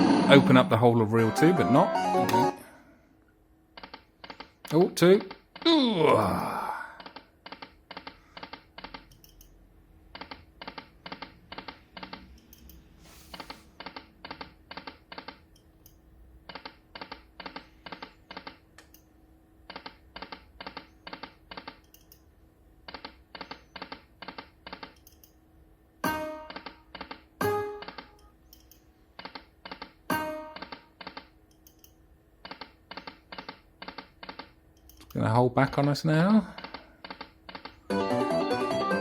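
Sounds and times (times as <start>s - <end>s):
slot machine chime: 0.4s - 2.8s, 37.9s - 39.0s
slot machine reels clicking: 1.3s - 2.6s.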